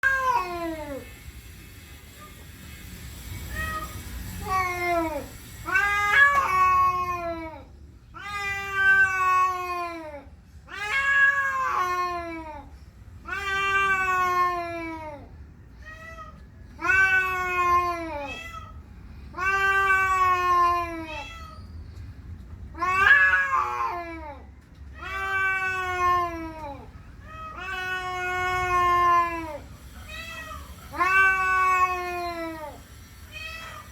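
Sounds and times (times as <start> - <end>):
cat yowling: 0.0 - 1.1, 3.4 - 21.6, 22.7 - 33.9.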